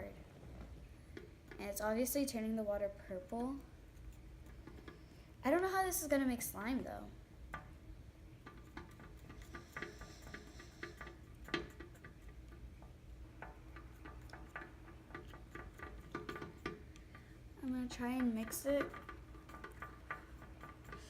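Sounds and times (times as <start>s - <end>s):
stick tapping inside a bottle: 4.4s - 5.1s, 7.5s - 7.8s, 8.4s - 21.0s.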